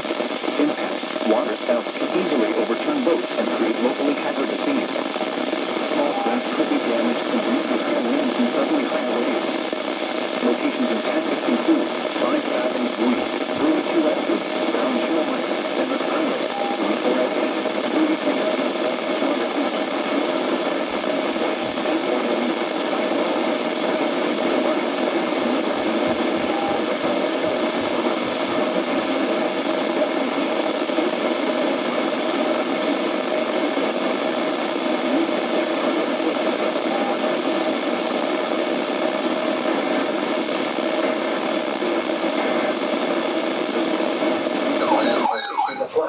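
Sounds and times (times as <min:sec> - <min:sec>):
radio static hiss: 0:00.0 - 0:46.0.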